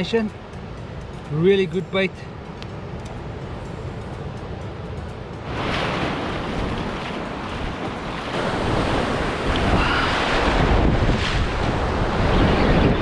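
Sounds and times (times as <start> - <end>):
ocean surf washing on shore: 0.0 - 13.0
wind buffeting microphone: 5.4 - 13.0.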